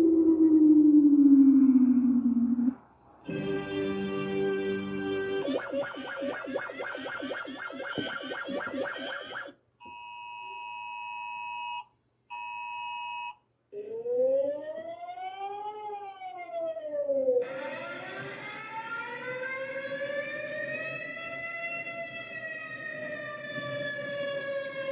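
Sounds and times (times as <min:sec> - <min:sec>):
wailing siren: 0:00.0 - 0:09.6, 0:13.7 - 0:24.9
rapidly pulsing alarm tones: 0:04.8 - 0:09.6, 0:17.4 - 0:24.9.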